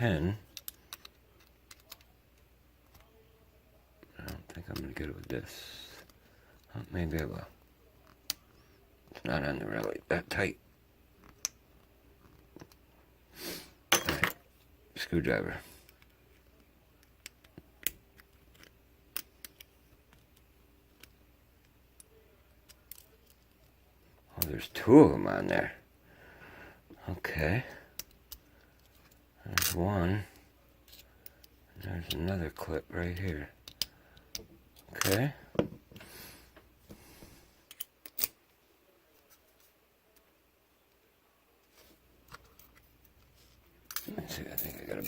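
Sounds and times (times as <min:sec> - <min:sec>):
small metal parts clicking: 0:00.5 - 0:02.1.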